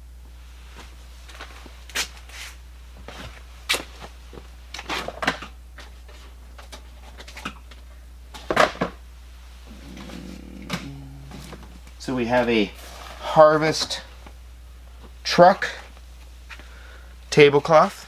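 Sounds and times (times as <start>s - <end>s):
steady low hum: 7.7s - 17.3s.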